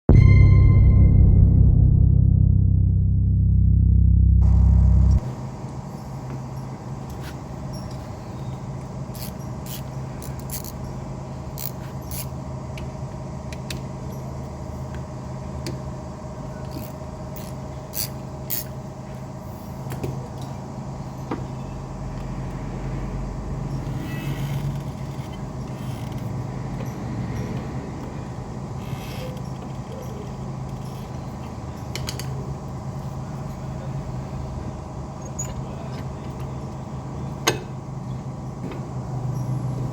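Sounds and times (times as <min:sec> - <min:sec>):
low mechanical hum: 0:00.1 - 0:39.9
tools and metal parts clinking: 0:07.2 - 0:11.0.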